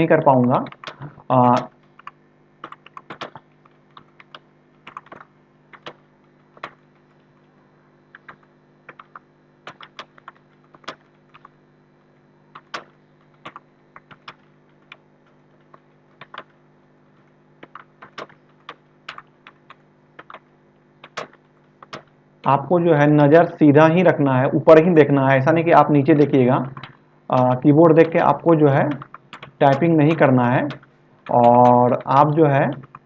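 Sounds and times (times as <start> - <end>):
faint low hum: 0.0 - 33.0
typing on computer keyboard: 0.4 - 7.2, 8.1 - 11.6, 12.5 - 16.6, 17.2 - 22.2, 26.1 - 33.0.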